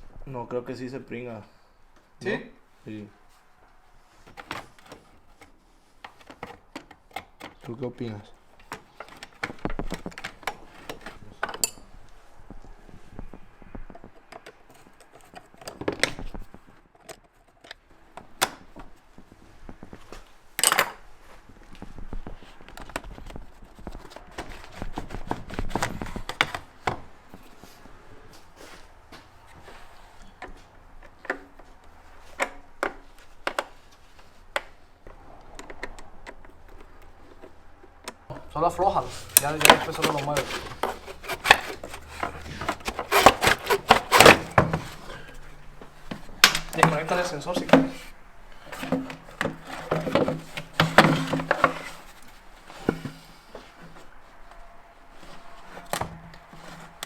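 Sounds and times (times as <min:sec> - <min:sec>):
hand tools clicking and clinking: 0:06.1 - 0:12.1, 0:35.5 - 0:54.2
clatter of parts: 0:39.2 - 0:54.1.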